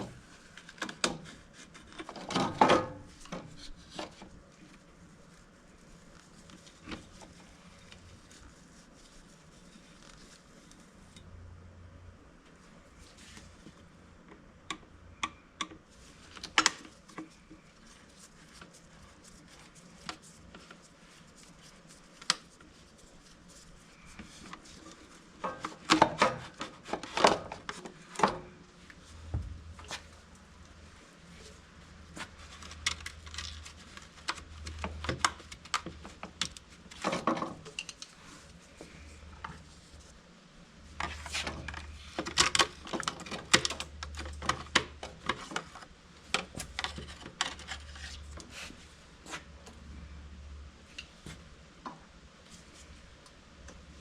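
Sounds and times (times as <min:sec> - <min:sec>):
parts being handled clicking and knocking: 0:32.1 - 0:39.7, 0:41.0 - 0:48.5.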